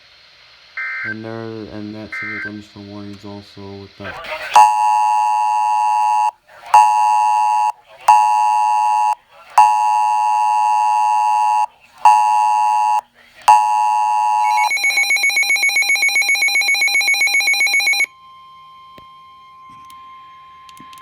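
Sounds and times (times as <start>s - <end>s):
fast high pulsing beep: 4.6s - 18.1s
two-tone alert beep: 4.6s - 18.1s.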